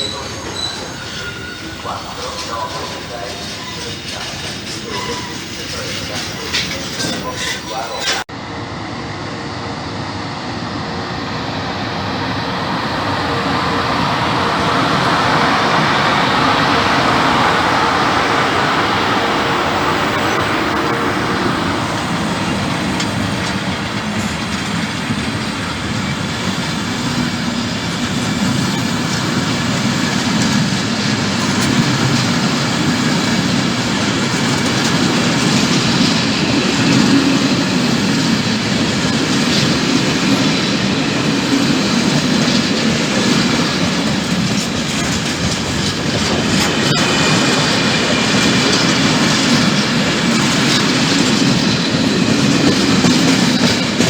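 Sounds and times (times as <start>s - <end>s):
wheels clattering over rail joints: 0.0s - 8.3s, 19.2s - 54.0s
freight train rumble: 0.0s - 54.0s.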